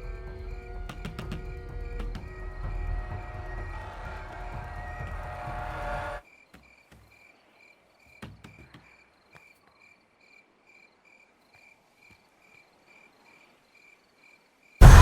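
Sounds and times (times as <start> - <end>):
crickets chirping: 9.0 - 14.5.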